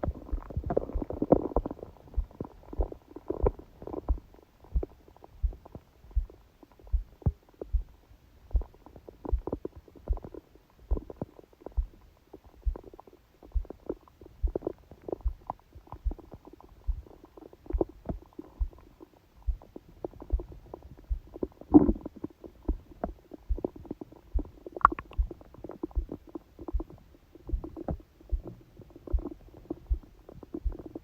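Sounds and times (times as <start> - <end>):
low heartbeat thuds: 0.0 - 31.0
stomach gurgling: 0.0 - 31.0.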